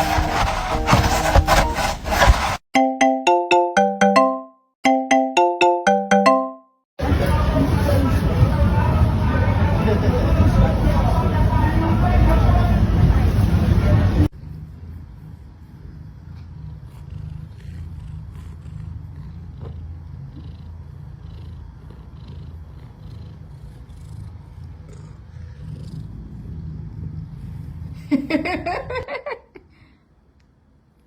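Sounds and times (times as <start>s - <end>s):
cat purring: 14.4s - 28.0s.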